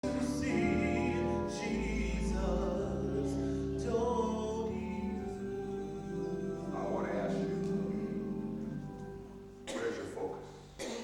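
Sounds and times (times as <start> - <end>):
people singing: 0.0 - 8.8
gospel music held chords: 0.0 - 11.0.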